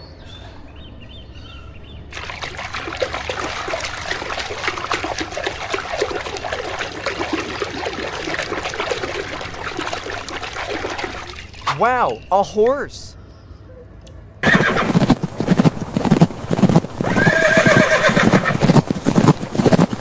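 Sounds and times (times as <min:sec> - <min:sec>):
water drips and splashes: 0:02.1 - 0:12.7
water running and splattering: 0:02.1 - 0:12.7.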